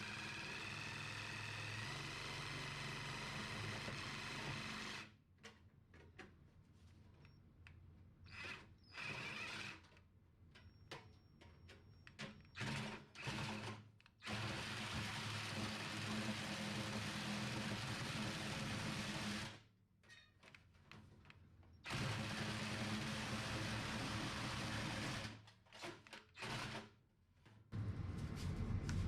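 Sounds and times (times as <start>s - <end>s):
handheld power tool running: 0.0s - 5.1s, 12.6s - 19.6s, 21.9s - 25.4s.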